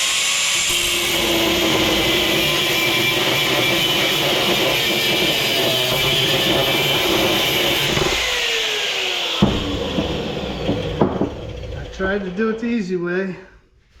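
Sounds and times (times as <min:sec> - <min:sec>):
angle grinder cutting metal: 0:00.0 - 0:13.0.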